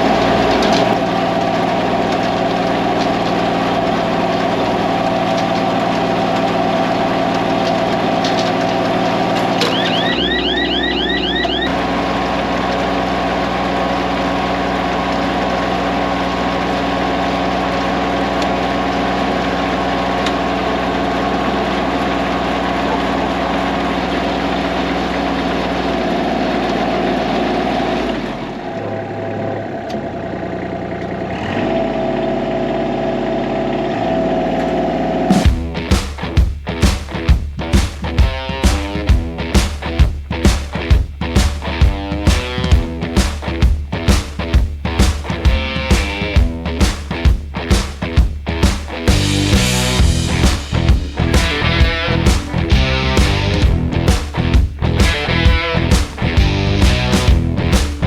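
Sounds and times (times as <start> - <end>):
diesel tractor engine running: 0.0 - 35.7, 49.1 - 58.0
high rising squeaks: 9.6 - 11.8.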